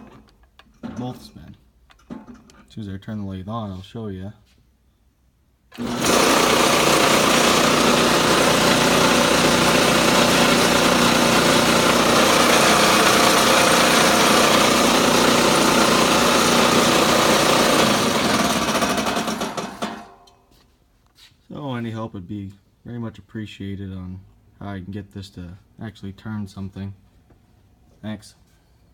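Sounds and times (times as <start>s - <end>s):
lathe spinning down: 5.7s - 20.2s
metal lathe humming and whirring: 5.8s - 19.5s.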